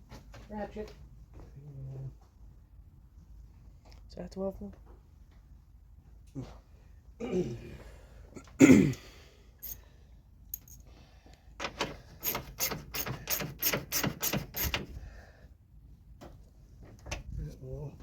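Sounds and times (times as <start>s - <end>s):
metal tools knocking: 12.2s - 14.9s
ratchet wrench clicking: 12.2s - 14.9s.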